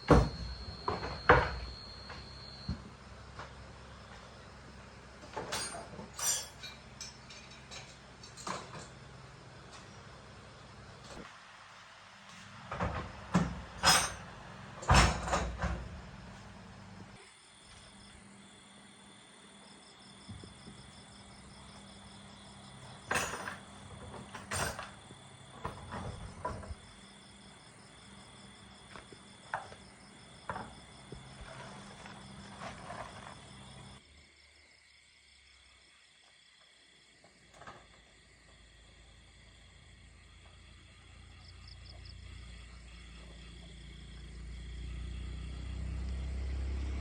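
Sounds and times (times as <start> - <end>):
insects chirping in trills: 0.0 - 11.2, 16.8 - 47.0.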